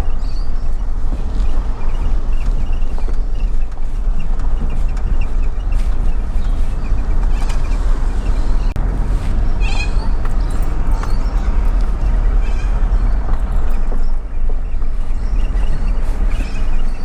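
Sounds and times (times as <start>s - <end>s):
vehicle engine and road rumble: 0.0s - 17.0s
faint bird chirps: 9.4s - 13.2s.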